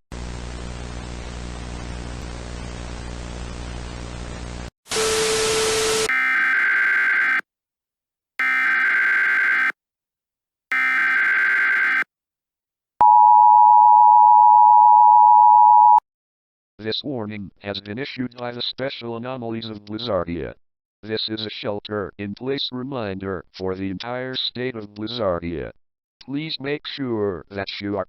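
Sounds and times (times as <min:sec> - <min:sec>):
two-tone attention signal: 0:13.0 - 0:16.0.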